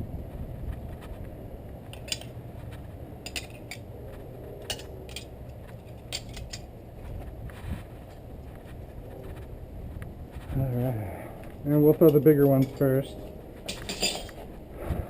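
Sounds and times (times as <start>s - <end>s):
low background rumble: 0.0s - 15.0s
metal knives clinking: 1.9s - 2.3s, 3.2s - 3.9s, 4.6s - 6.7s, 11.9s - 14.5s.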